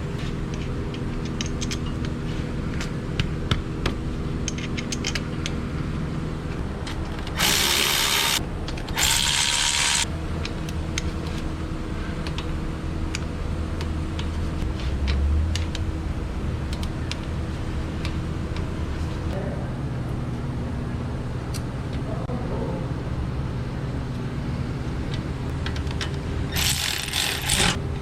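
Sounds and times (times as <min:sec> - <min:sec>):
steady shop hum: 0:00.0 - 0:28.0
hand tools clicking and ratcheting: 0:07.0 - 0:10.1, 0:25.6 - 0:27.8.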